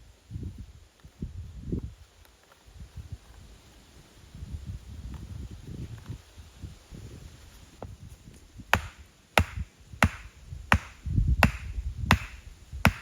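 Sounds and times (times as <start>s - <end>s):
axe chopping wood: 8.7s - 13.0s.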